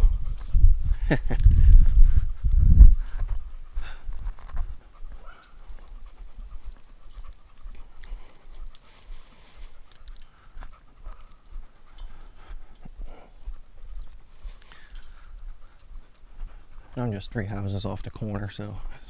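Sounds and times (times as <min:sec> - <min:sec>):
dog panting: 0:00.0 - 0:19.0
footsteps ticking: 0:00.0 - 0:19.0
wind rumbling on microphone: 0:00.0 - 0:19.0.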